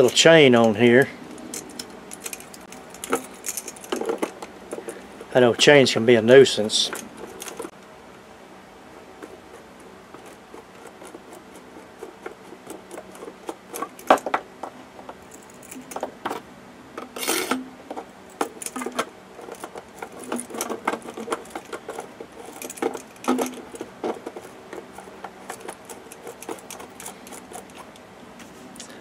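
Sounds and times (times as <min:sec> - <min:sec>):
metal chain clinking: 0:00.0 - 0:05.3, 0:15.2 - 0:16.2, 0:18.3 - 0:28.1
brief scrape: 0:17.2 - 0:17.6.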